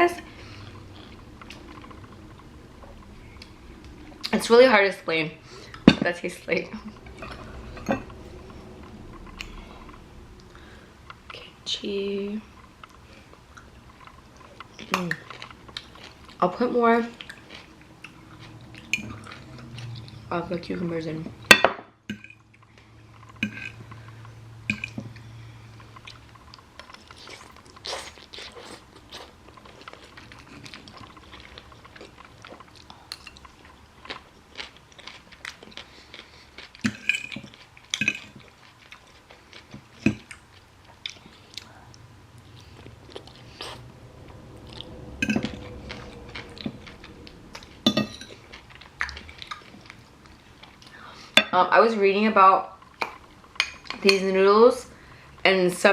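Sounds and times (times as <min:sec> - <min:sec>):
person chewing and crunching food: 0:00.2 - 0:04.4, 0:12.5 - 0:20.3, 0:22.1 - 0:51.4.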